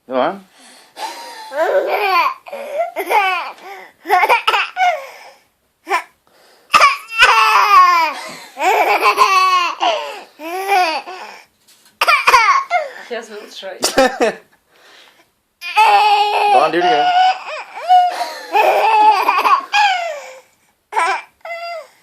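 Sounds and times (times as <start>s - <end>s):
baby laughing: 1.4s - 5.0s, 6.7s - 11.3s, 12.0s - 12.9s, 15.6s - 20.3s.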